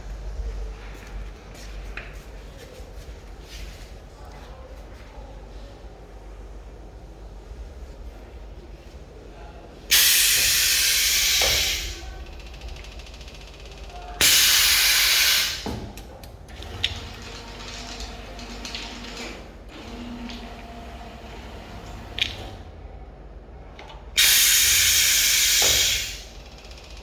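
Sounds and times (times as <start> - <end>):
hissing air bursts: 9.9 - 12.2, 14.2 - 15.7, 24.2 - 26.4.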